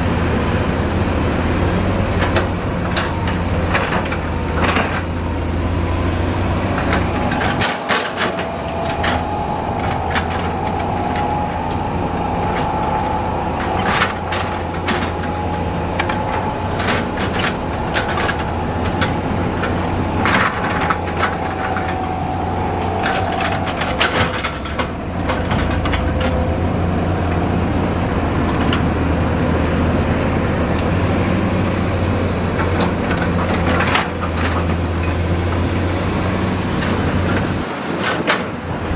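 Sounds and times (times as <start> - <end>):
diesel machinery engine hum: 0.0 - 38.9
faint wavering whine: 7.0 - 25.8.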